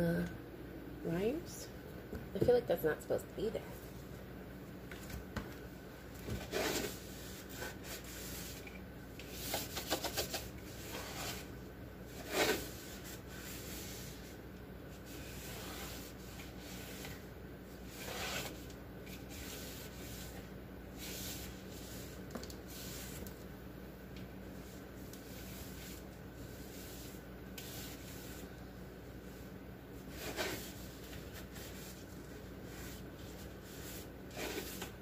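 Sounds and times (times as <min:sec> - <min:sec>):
rubbing and scraping: 0:06.2 - 0:11.5, 0:12.1 - 0:17.2.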